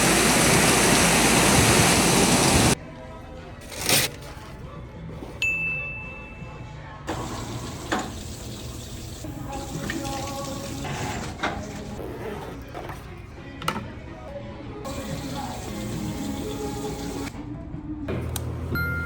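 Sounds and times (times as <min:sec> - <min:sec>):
tap water running into sink: 0:07.1 - 0:10.9, 0:14.9 - 0:17.3.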